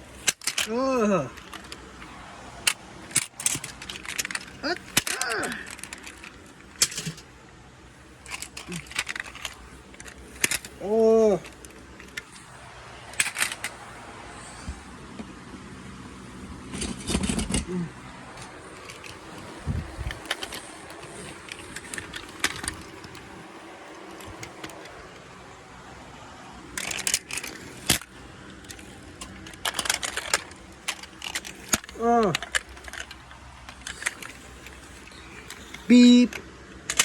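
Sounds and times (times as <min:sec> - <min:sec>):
clicking and rattling: 0:00.0 - 0:15.3, 0:16.4 - 0:37.0.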